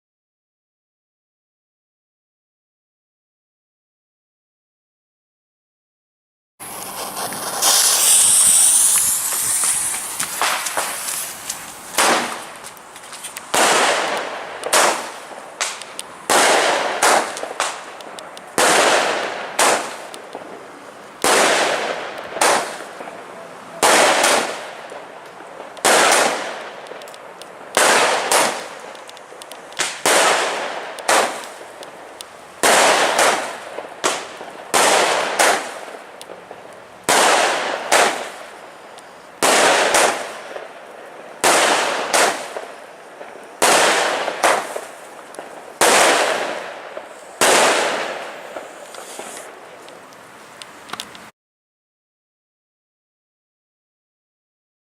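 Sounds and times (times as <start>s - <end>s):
firework cake bangs: 6.6s - 20.6s, 21.2s - 32.0s, 32.6s - 38.5s, 39.4s - 40.7s, 41.4s - 49.5s.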